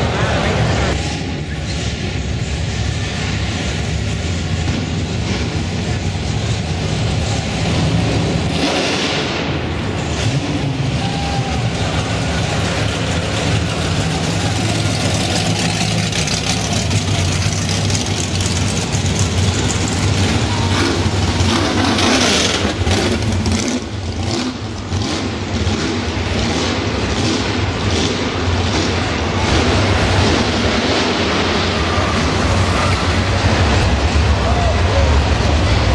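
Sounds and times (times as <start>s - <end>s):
muscle car engines revving: 0.0s - 35.9s
steady low rumble: 0.0s - 35.9s.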